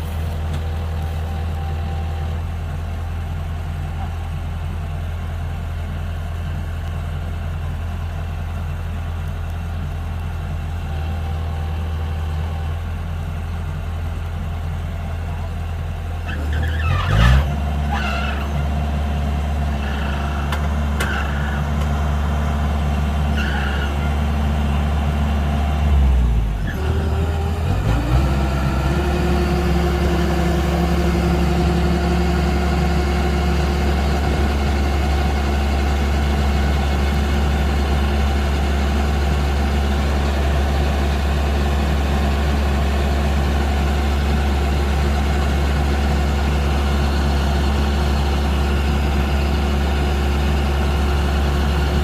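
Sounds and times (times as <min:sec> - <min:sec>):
diesel engine running: 0:00.0 - 0:52.0.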